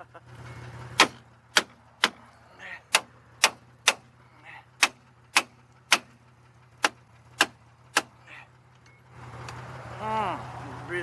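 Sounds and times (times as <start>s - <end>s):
hammer striking brake drum: 1.0s - 2.2s, 2.9s - 4.1s, 4.8s - 6.2s.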